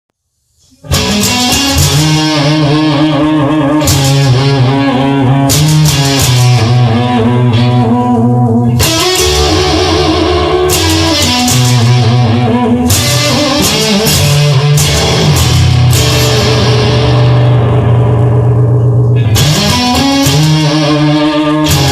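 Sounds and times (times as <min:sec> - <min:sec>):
instrumental rock music with guitar: 0:00.8 - 0:21.9.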